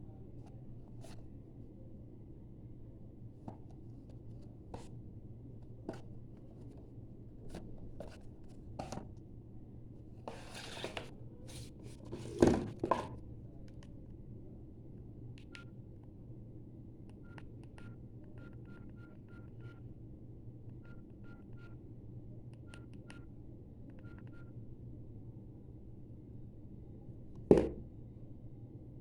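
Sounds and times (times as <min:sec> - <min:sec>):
phone keys clicking and beeping: 0:23.9 - 0:24.4.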